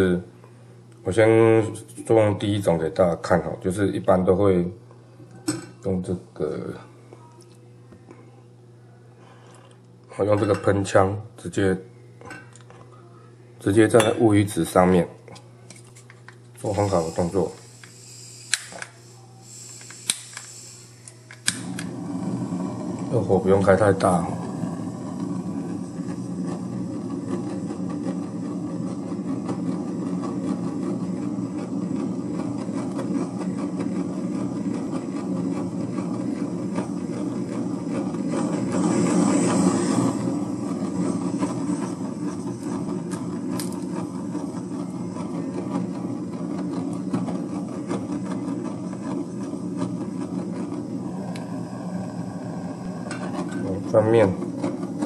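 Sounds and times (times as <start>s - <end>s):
blowtorch hissing roar: 16.6s - 55.0s.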